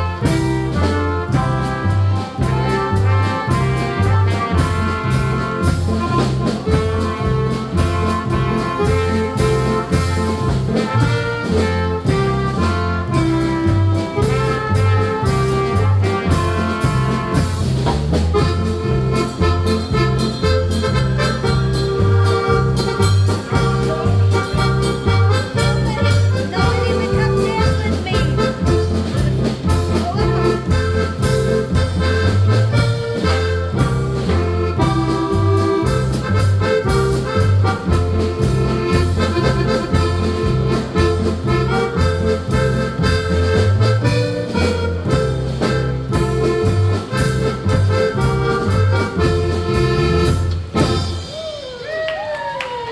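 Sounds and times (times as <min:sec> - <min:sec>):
accordion melody: 0:00.0 - 0:51.3
oom-pah bass line: 0:00.0 - 0:51.4
polka band playing: 0:00.0 - 0:52.0.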